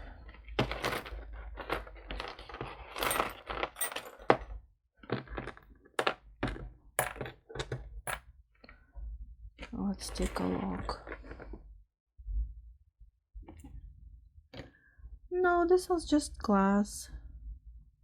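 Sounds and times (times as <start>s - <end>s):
jewelry pieces clinking: 0.3s - 8.2s, 10.0s - 11.4s.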